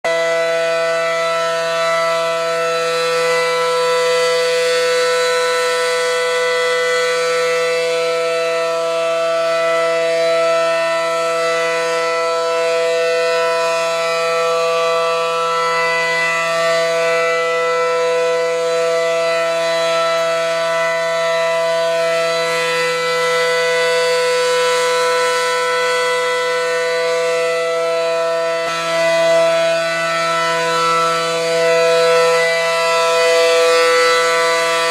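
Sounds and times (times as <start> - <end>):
air raid siren steady low tone: 0.0 - 34.9.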